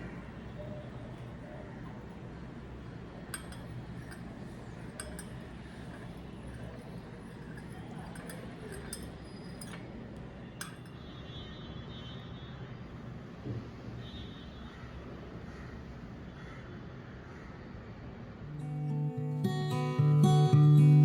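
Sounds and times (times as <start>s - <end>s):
glassware and dishes clinking: 0.6s - 11.0s.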